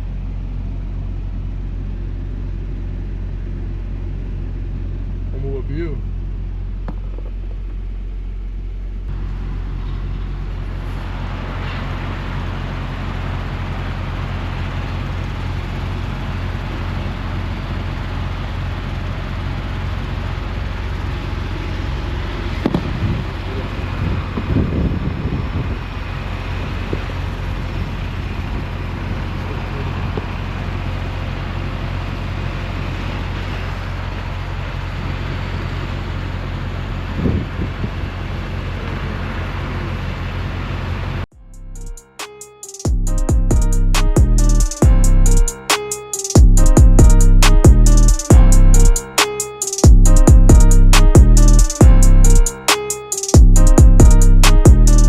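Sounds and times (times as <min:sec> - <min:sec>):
diesel truck engine running: 0:00.0 - 0:42.1, 0:42.9 - 0:45.7, 0:46.4 - 0:49.3, 0:49.9 - 0:52.8, 0:53.4 - 0:55.0
road noise hiss: 0:00.0 - 0:55.0
low sounds: 0:46.4 - 0:49.3.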